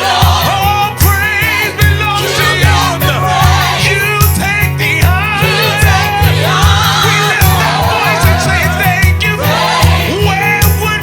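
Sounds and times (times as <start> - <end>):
gospel band with drums and bass: 0.0 - 11.0
singing with wide vibrato: 0.0 - 11.0.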